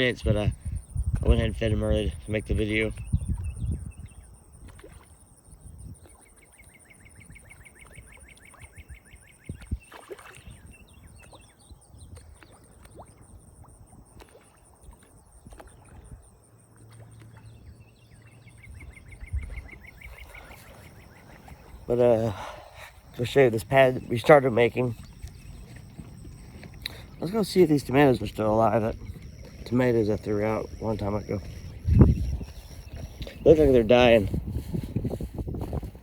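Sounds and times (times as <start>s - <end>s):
wind rumbling on microphone: 0.0s - 6.2s, 7.0s - 16.4s, 17.0s - 36.0s
rapid pulsed insect calls: 0.0s - 35.9s
high insect trill: 18.5s - 35.8s.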